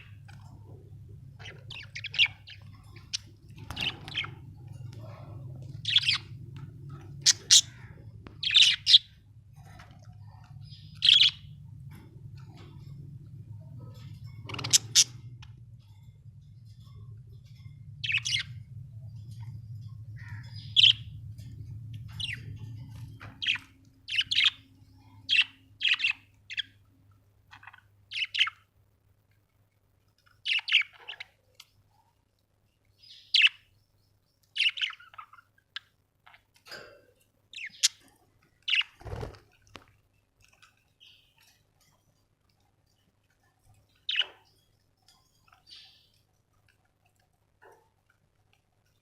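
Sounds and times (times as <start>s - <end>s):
low hum: 0.0s - 25.8s
budgerigar chirping: 5.8s - 6.4s, 7.2s - 9.1s, 10.8s - 11.4s, 14.5s - 15.2s, 18.0s - 18.5s, 23.4s - 24.6s, 33.1s - 33.6s, 34.6s - 35.4s.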